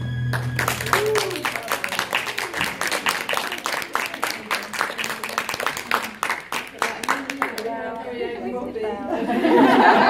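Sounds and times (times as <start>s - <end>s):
audience applauding: 0.2s - 8.0s.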